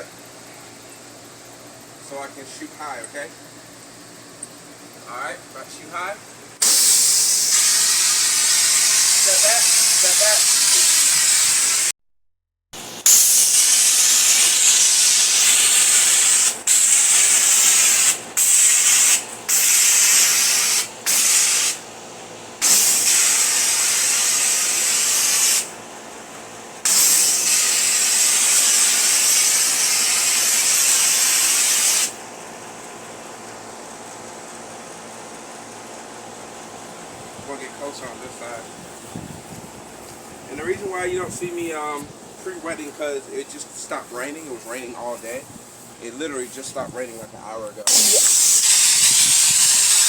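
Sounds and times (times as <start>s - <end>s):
steady machine hum: 0.0s - 10.4s
spray wand hissing: 6.6s - 11.9s, 13.1s - 21.8s, 22.6s - 25.8s, 26.8s - 32.2s, 47.9s - 50.0s.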